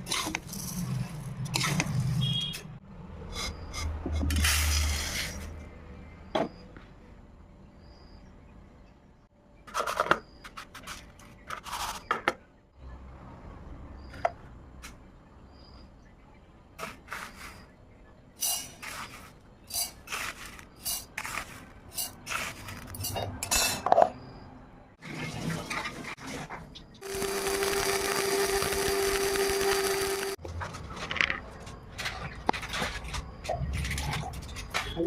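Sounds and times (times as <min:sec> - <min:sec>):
metal utensils scraping cookware: 0:18.4 - 0:24.1.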